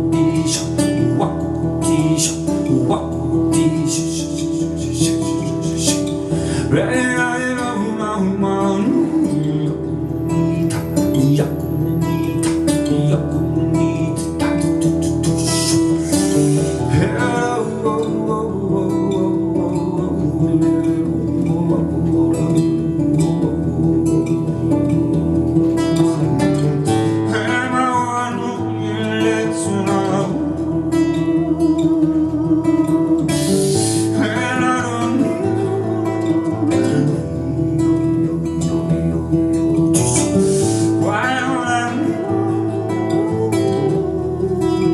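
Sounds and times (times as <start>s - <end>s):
acoustic guitar plucking and strumming: 0.0s - 44.9s
wordless voice: 0.4s - 7.6s, 12.2s - 19.5s.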